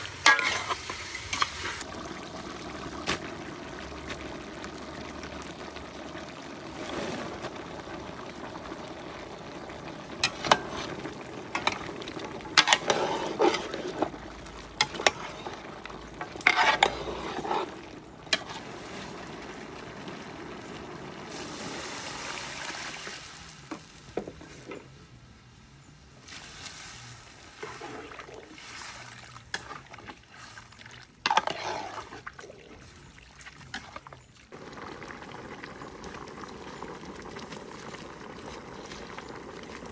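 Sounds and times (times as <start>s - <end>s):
liquid sloshing and stirred: 0.0s - 20.8s, 27.4s - 39.9s.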